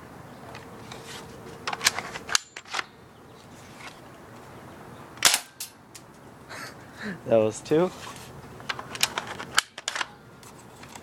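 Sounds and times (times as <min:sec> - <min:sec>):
sharp plastic clicks of toy rifle: 0:05.2 - 0:06.1, 0:08.6 - 0:10.1.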